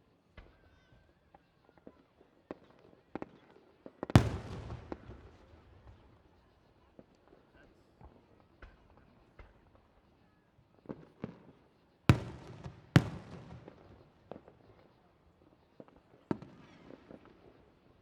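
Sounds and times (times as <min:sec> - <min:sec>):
faint firework pops: 0:01.8 - 0:06.2, 0:08.0 - 0:09.9, 0:10.8 - 0:14.9, 0:15.8 - 0:17.6
firework booms with rolling echo: 0:04.1 - 0:06.1, 0:12.1 - 0:14.5.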